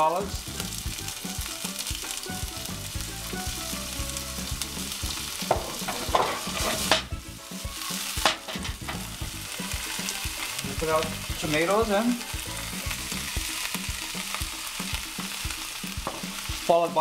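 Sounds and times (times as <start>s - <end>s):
vegetables sizzling in oil: 0.0s - 17.0s
stirring knocks and scrapes: 5.4s - 7.2s, 8.1s - 9.2s.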